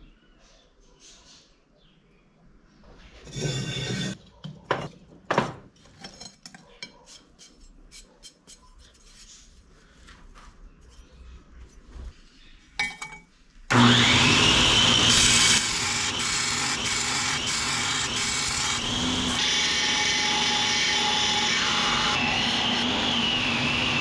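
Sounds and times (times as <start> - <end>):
electric grinder whining: 13.7 - 24.0.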